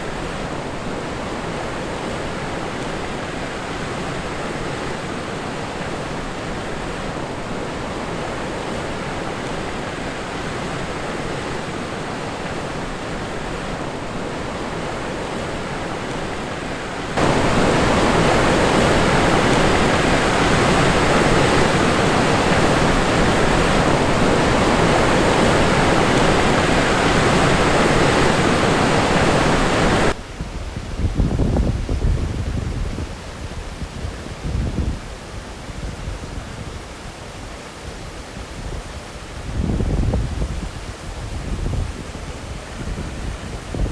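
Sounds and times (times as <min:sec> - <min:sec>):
waterfall rushing: 0:00.0 - 0:30.2.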